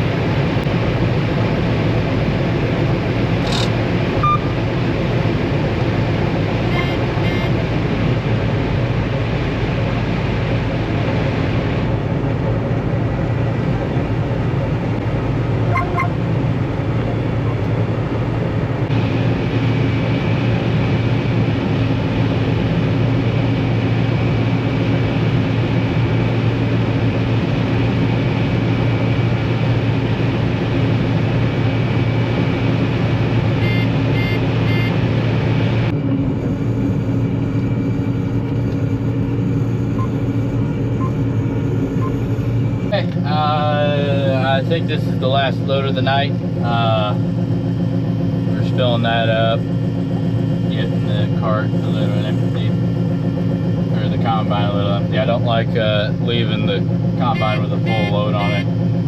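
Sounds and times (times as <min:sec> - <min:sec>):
combine harvester drone: 0:00.0 - 0:59.0
short electronic beeps: 0:03.5 - 0:04.6, 0:06.7 - 0:07.5, 0:15.7 - 0:16.2, 0:33.6 - 0:35.0, 0:40.0 - 0:40.2, 0:41.0 - 0:41.2, 0:42.0 - 0:42.2.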